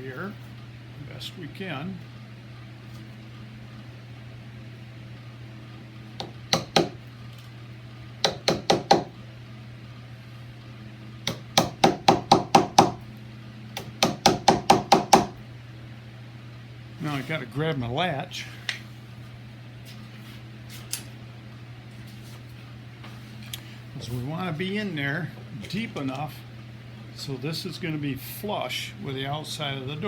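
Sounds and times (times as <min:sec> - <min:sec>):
steady low hum: 0:00.0 - 0:30.0
hammer tapping a chisel into wood: 0:06.2 - 0:07.0, 0:08.2 - 0:09.1, 0:11.3 - 0:13.0, 0:13.8 - 0:15.4.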